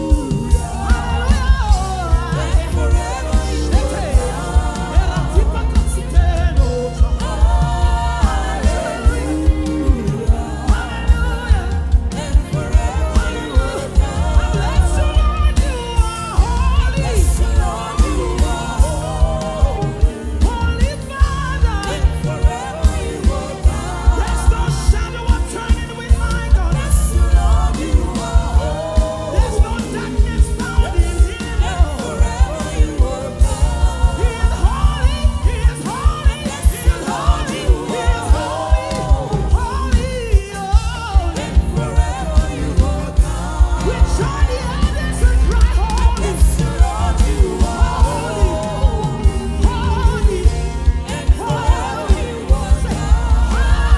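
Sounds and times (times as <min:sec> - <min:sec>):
band with bass and drums: 0:00.0 - 0:53.9
voices singing gospel: 0:00.0 - 0:53.9.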